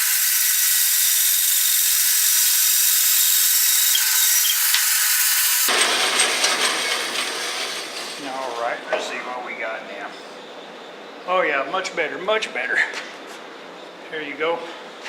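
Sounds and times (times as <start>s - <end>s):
bandsaw cutting log: 0.0s - 5.8s.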